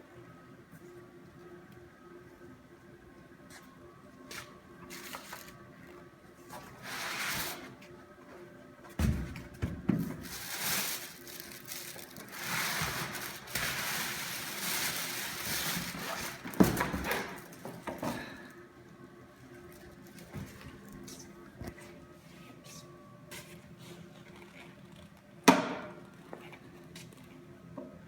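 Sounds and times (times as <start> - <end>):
packaging rustling and crinkling: 10.0 - 17.8.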